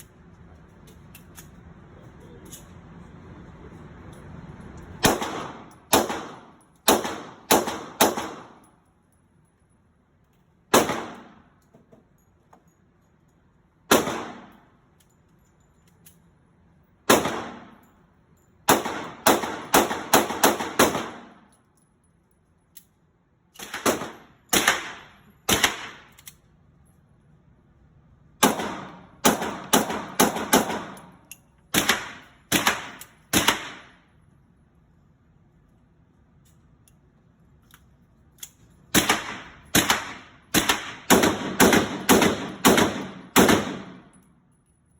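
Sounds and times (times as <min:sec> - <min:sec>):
gunshots with echoing tail: 0:05.0 - 0:08.6, 0:13.9 - 0:14.6, 0:17.1 - 0:17.8, 0:18.7 - 0:21.4, 0:28.4 - 0:31.1, 0:39.0 - 0:44.1.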